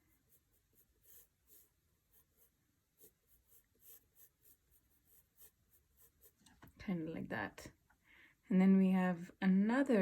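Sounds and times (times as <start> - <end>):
pencil scratching on paper: 0.0 - 6.5.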